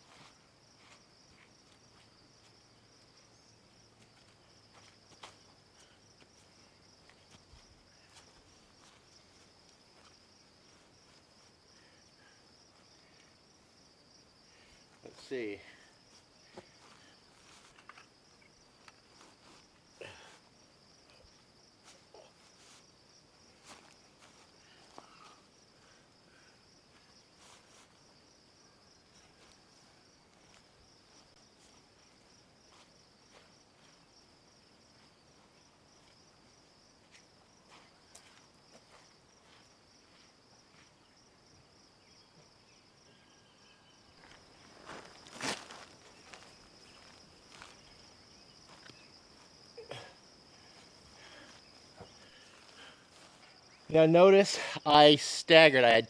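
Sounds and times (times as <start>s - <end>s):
insect trill: 0.0s - 56.0s.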